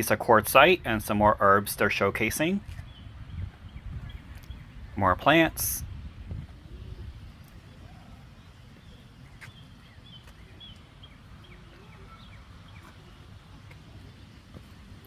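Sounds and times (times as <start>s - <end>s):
low steady rumble: 0.2s - 15.0s
small birds chirping: 2.4s - 5.6s, 6.2s - 15.0s.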